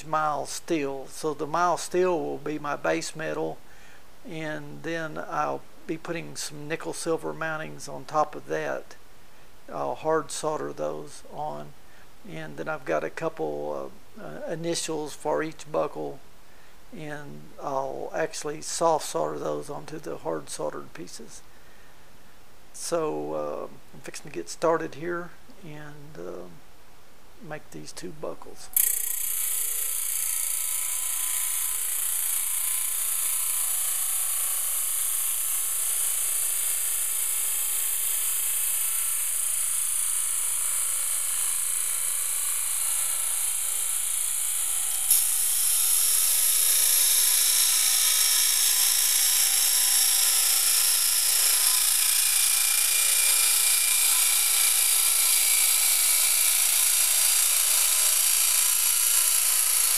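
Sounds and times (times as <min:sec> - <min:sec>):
belt sander grinding steel: 0:28.7 - 0:59.9.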